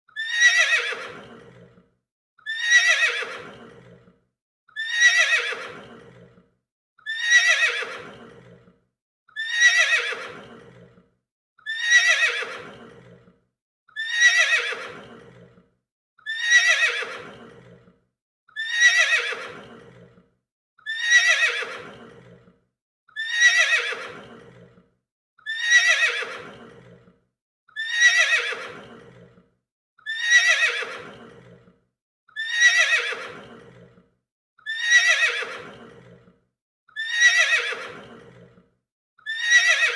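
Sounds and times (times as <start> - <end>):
horse neighing: 0.2 - 1.7, 2.5 - 4.1, 4.8 - 6.4, 7.1 - 8.7, 9.4 - 10.9, 11.7 - 13.2, 14.0 - 15.5, 16.3 - 17.8, 18.6 - 20.1, 20.9 - 22.4, 23.2 - 24.7, 25.5 - 27.0, 27.8 - 29.3, 30.1 - 31.6, 32.4 - 33.9, 34.7 - 36.2, 37.0 - 38.4.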